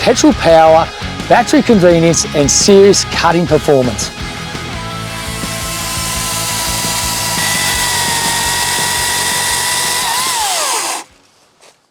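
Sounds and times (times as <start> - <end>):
background music: 0.0 - 11.2
chainsaw running: 4.0 - 11.1.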